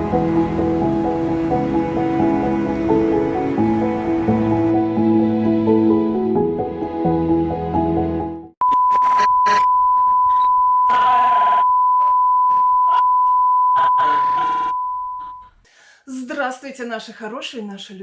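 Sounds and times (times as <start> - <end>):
music: 0.0 - 8.6
loud electronic beep tone: 8.6 - 15.5.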